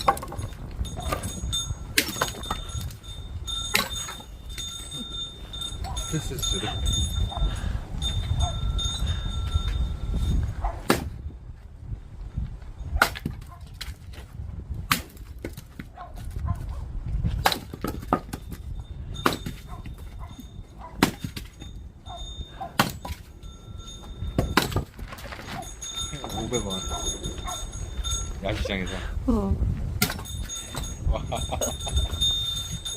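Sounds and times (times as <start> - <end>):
axe chopping firewood: 0.0 - 2.6, 3.7 - 4.2, 10.7 - 11.2, 12.9 - 16.4, 17.3 - 20.1, 20.9 - 21.6, 22.6 - 23.3, 24.4 - 25.6, 30.0 - 30.9.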